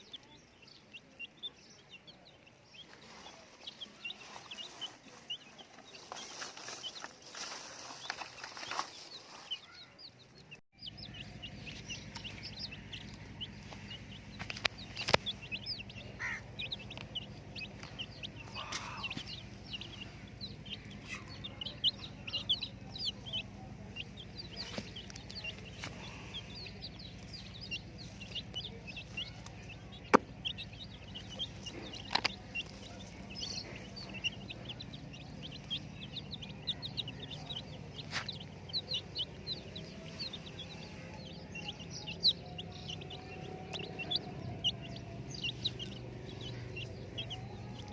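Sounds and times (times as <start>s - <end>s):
baby chicks peeping: 0.0s - 47.9s
steady low hum: 10.8s - 47.9s
sharp clicks: 14.4s - 15.4s.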